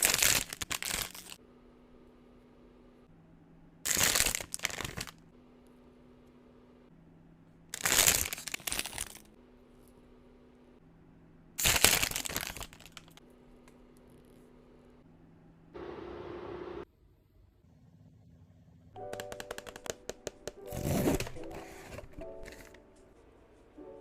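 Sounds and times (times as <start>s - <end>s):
packaging crinkling: 0.0s - 1.4s, 3.9s - 5.2s, 7.8s - 9.3s, 11.6s - 13.2s, 19.0s - 22.8s.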